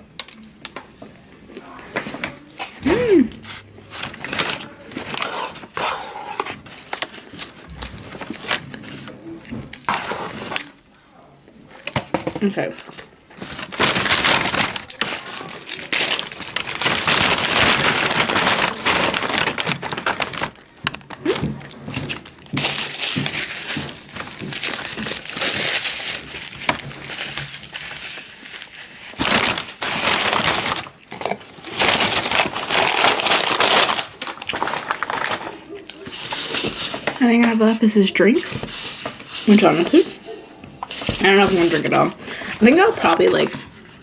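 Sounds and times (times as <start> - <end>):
paper wrappers crinkling: 1.6 - 44.0.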